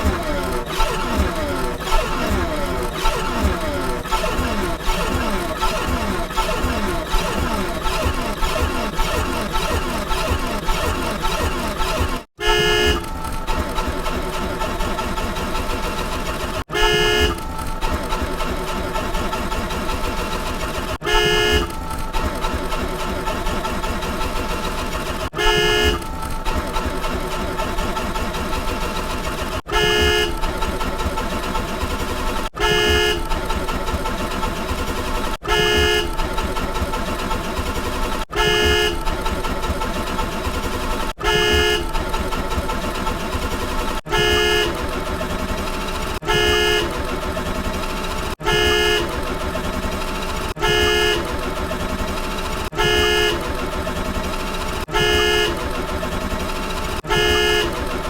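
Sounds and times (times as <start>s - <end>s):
short horn-like toot: 0.0s - 21.8s, 24.7s - 26.1s, 28.9s - 31.0s, 32.1s - 34.2s, 35.0s - 39.6s, 41.0s - 42.0s, 44.0s - 47.0s, 48.2s - 49.2s, 49.9s - 51.4s, 52.1s - 53.5s, 54.2s - 55.6s, 56.8s - 57.9s.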